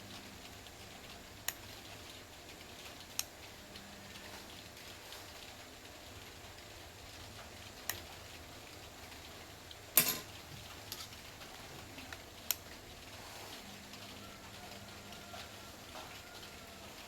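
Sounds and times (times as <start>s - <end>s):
faint steady hiss: 0.0s - 17.0s.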